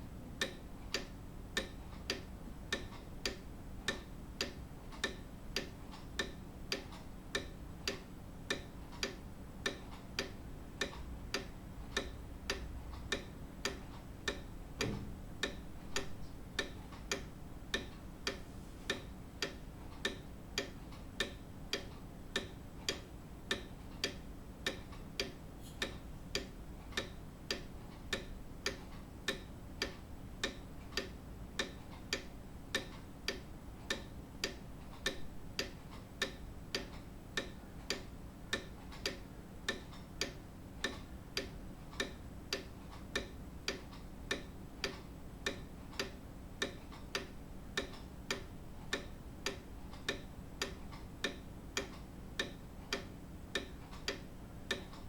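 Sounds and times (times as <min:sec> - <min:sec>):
grandfather clock ticking: 0:00.4 - 0:55.0
soft low thud: 0:14.8 - 0:15.4.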